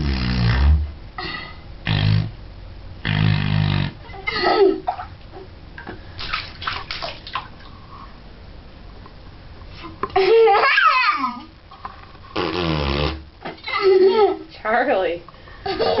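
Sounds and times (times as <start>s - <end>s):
plastic cup fart noise in water: 0.0s - 0.9s, 1.8s - 2.4s, 3.0s - 4.0s, 12.3s - 13.7s
bathwater splashing: 6.1s - 7.7s.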